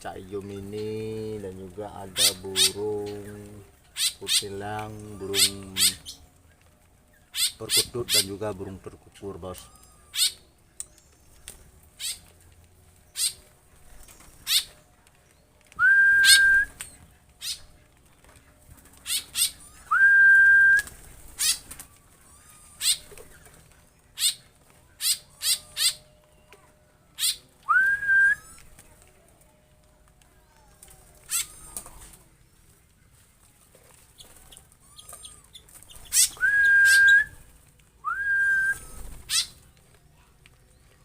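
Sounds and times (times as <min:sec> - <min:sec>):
songbirds chirping: 0:00.0 - 0:41.0
rising bird whistle: 0:15.8 - 0:16.7, 0:19.7 - 0:20.9, 0:27.6 - 0:28.6, 0:36.2 - 0:37.4, 0:38.0 - 0:39.4.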